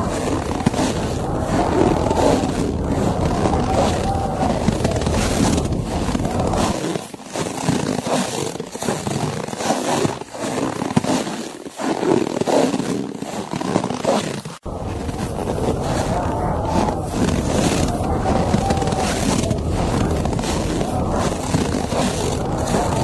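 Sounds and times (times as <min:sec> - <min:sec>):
low wind rumble: 0:00.0 - 0:06.8, 0:14.7 - 0:23.0.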